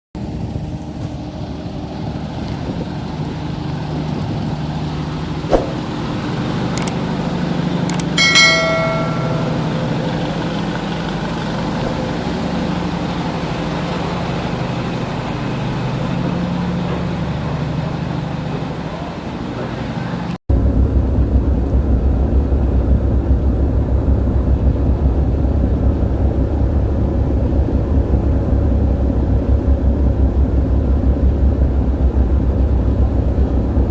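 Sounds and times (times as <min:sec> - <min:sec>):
low engine hum: 0:00.2 - 0:33.9
bell-like strike: 0:07.9 - 0:10.4.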